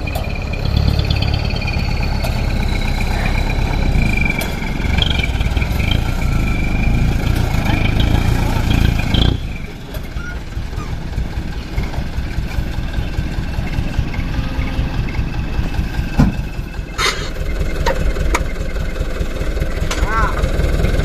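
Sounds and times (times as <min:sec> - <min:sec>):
diesel engine rumbling: 0:00.0 - 0:21.0
thump: 0:16.1 - 0:16.5.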